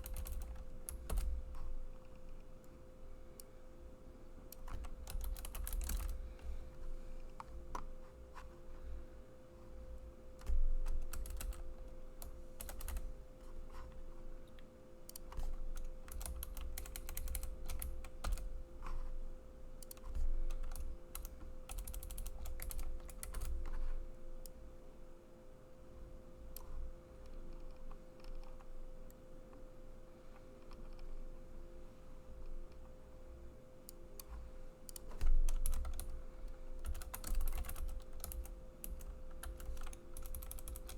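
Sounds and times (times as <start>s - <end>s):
typing on a computer keyboard: 0.0s - 2.5s, 4.5s - 6.3s, 10.4s - 13.2s, 15.1s - 19.0s, 19.8s - 23.8s, 26.5s - 28.7s, 33.9s - 40.9s
faint steady hum: 0.0s - 40.9s.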